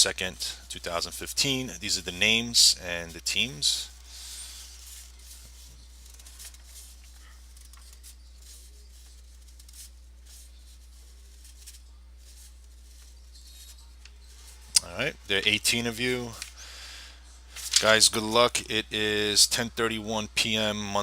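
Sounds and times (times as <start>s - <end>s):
low electrical hum: 0.0s - 21.0s
faint clicks and rustles: 3.8s - 14.8s.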